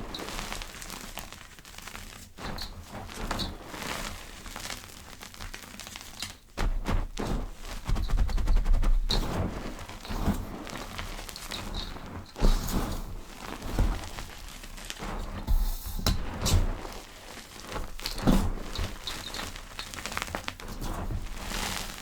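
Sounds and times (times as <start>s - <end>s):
powder crackling as crushed by hand: 7.6s - 22.0s
dull thuds: 15.0s - 16.9s.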